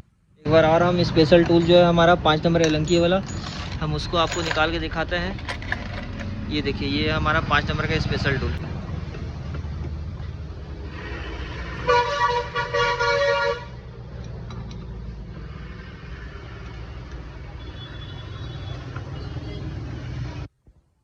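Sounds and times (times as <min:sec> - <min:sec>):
passing traffic rumble: 0:00.5 - 0:20.5
vehicle horn honking: 0:11.1 - 0:13.7.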